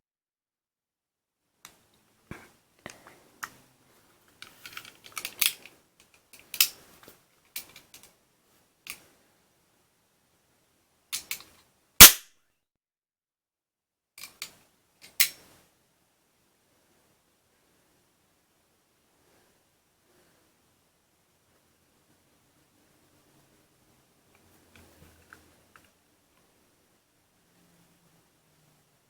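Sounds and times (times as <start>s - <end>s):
cap gun cracks: 12.0s - 12.3s.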